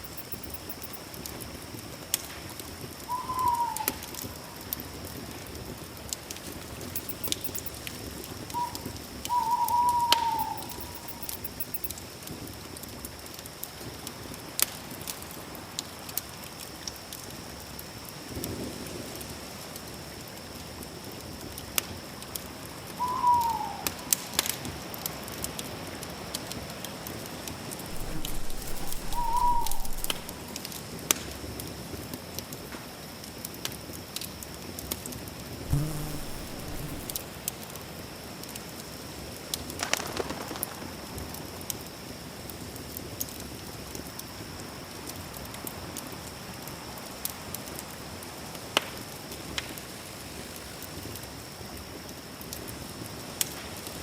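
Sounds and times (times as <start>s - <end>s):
faint steady high tone: 0.0s - 1.0s, 8.7s - 11.9s, 27.9s - 30.4s, 35.7s - 37.2s
campfire crackling and popping: 27.9s - 30.4s
short bird call: 27.9s - 30.4s, 35.7s - 37.2s
drawn-out animal call: 35.7s - 37.2s.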